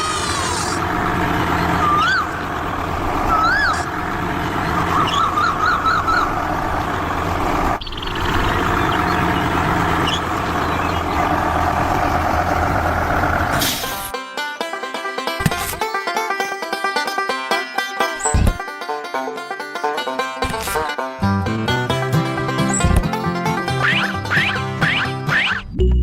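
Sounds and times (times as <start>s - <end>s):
vehicle engine humming: 0.0s - 14.1s
high warbling whistle tones: 4.6s - 6.5s, 7.8s - 11.5s
plucked banjo music: 13.7s - 25.6s.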